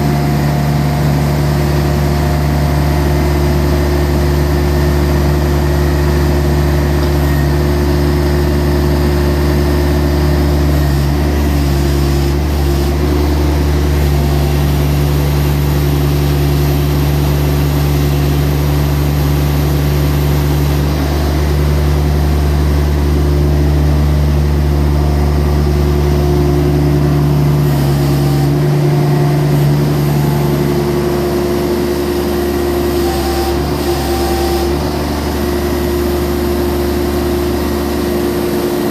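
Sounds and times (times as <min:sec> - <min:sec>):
tractor diesel engine running: 0:00.0 - 0:38.9.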